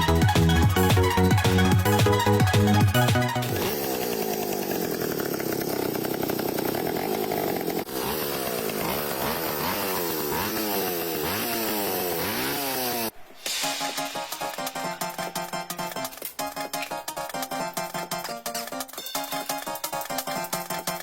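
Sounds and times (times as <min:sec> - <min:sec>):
small motor running: 0:03.4 - 0:13.1.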